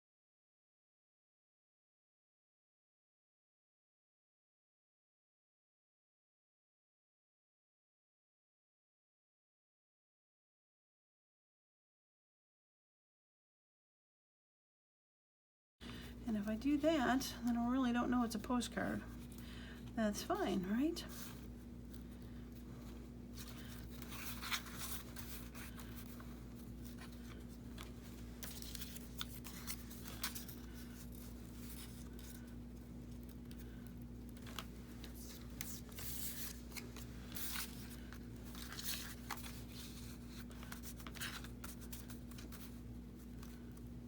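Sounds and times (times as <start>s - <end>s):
faint electrical hum: 15.8s - 44.0s
paper rustling: 19.1s - 44.0s.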